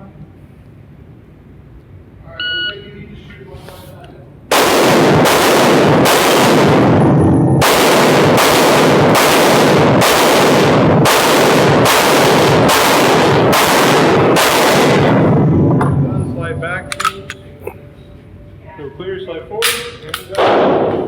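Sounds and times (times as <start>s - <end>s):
pistol shots: 4.5s - 15.5s, 19.6s - 21.0s.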